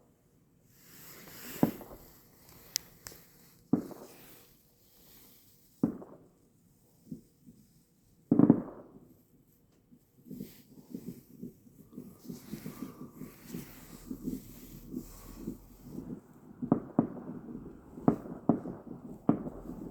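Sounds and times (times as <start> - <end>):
distant fireworks booming: 8.3 - 9.1, 10.3 - 19.9.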